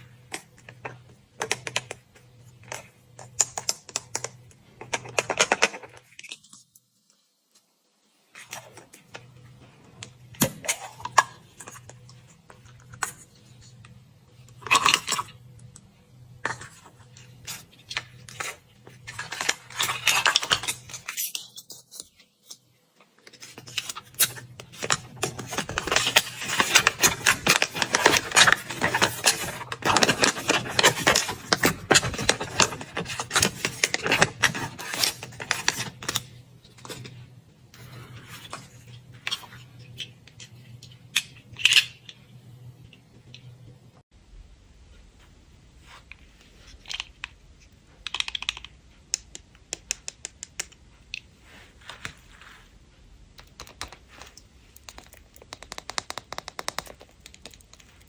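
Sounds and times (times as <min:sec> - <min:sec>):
crinkling wrapper: 0:23.2 - 0:36.2.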